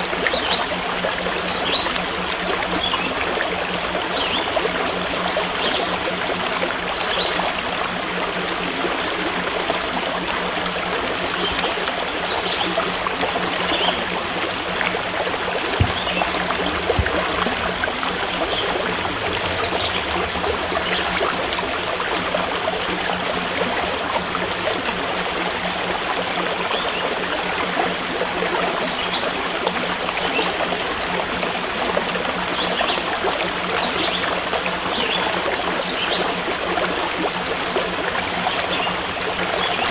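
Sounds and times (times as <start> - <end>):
stream flowing and trickling: 0.0 - 39.9
brief knocks: 15.8 - 18.4.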